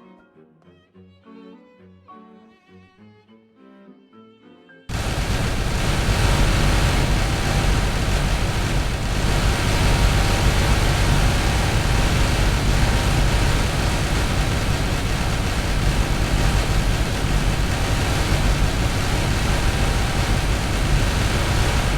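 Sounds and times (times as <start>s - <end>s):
explosion rumble: 4.9s - 21.9s.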